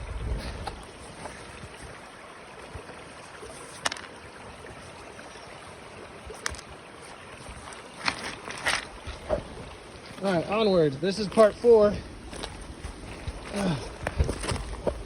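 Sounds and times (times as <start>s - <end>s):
creek water flowing: 0.0s - 15.0s.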